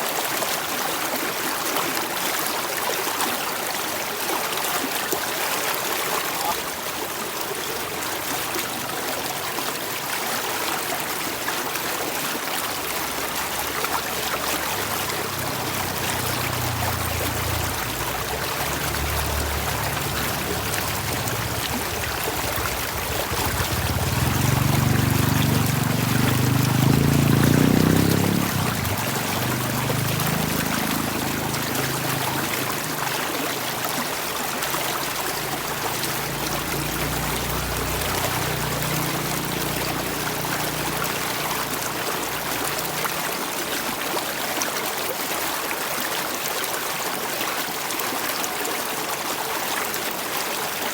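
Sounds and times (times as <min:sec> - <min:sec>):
stream water running: 0:00.0 - 0:50.9
low rumble: 0:15.8 - 0:26.4.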